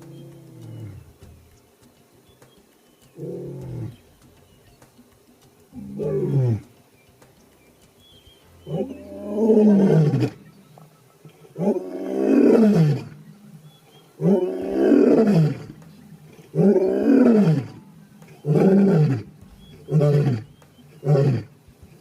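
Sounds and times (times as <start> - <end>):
lion roaring: 5.8 - 6.6, 8.7 - 10.4, 11.4 - 13.6, 14.2 - 21.5.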